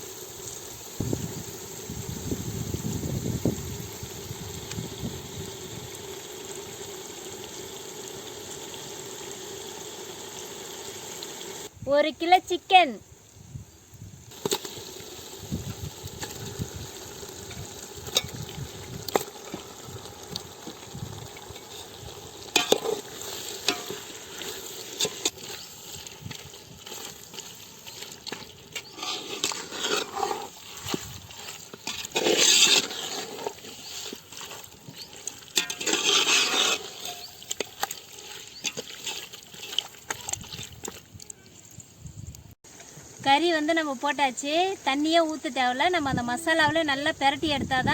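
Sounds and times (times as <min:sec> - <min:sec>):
chicken sizzling in a pot: 0:00.0 - 0:12.0, 0:12.7 - 0:47.9
ladle clinking and scraping pot: 0:17.5 - 0:19.7, 0:20.6 - 0:41.0.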